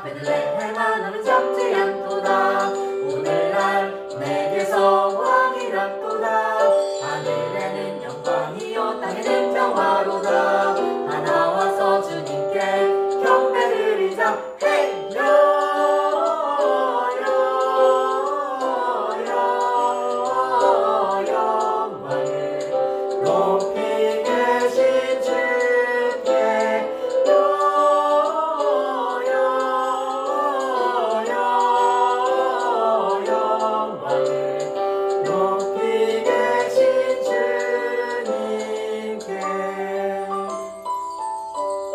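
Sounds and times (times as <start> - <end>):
group singing carols: 0.0 - 40.9
instrumental backing track: 0.0 - 41.9.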